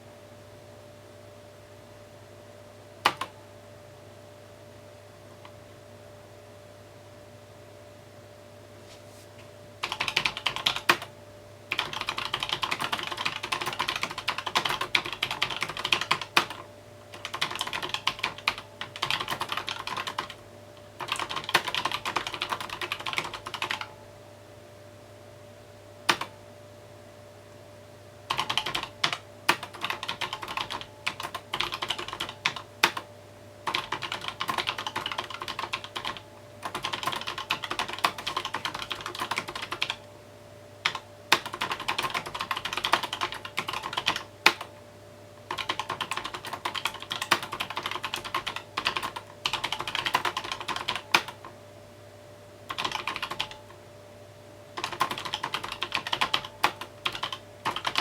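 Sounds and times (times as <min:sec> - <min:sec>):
typing on mechanical keyboard: 0:03.1 - 0:03.3, 0:09.8 - 0:11.1, 0:11.7 - 0:23.9, 0:26.1 - 0:26.3, 0:28.3 - 0:33.1, 0:33.7 - 0:40.0, 0:40.8 - 0:44.7, 0:45.5 - 0:51.5, 0:52.7 - 0:53.7, 0:54.8 - 0:58.0.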